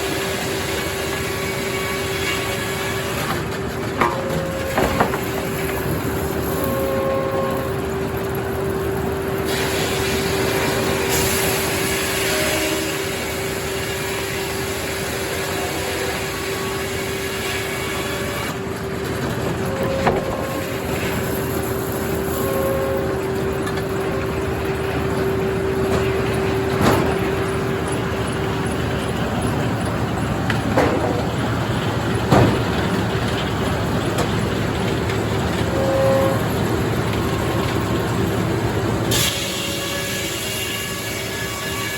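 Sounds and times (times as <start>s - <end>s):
circular sawmill sawing log: 0.0s - 41.9s.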